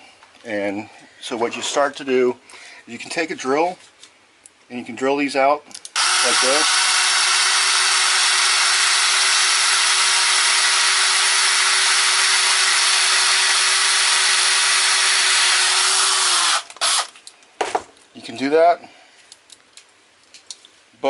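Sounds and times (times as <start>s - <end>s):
electric drill whining and grinding: 6.0s - 17.2s.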